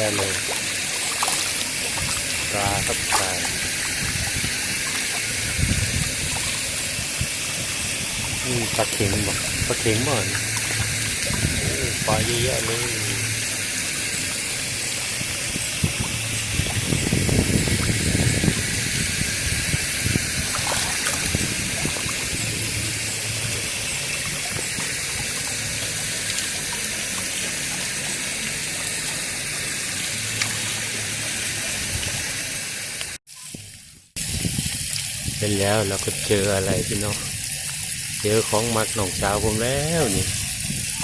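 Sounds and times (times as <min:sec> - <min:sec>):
water gushing: 0:00.0 - 0:33.2, 0:34.2 - 0:41.0
low hum: 0:00.2 - 0:28.6.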